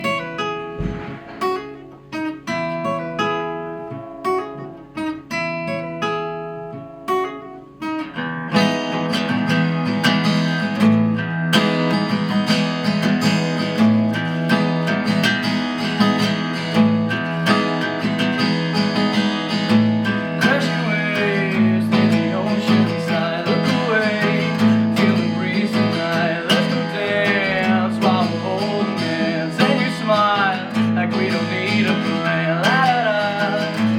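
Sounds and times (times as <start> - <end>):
acoustic guitar picking and strumming: 0.0 - 33.9.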